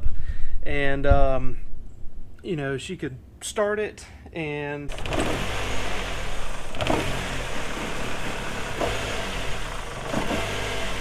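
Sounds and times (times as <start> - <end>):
vehicle engine hum: 4.9 - 11.0.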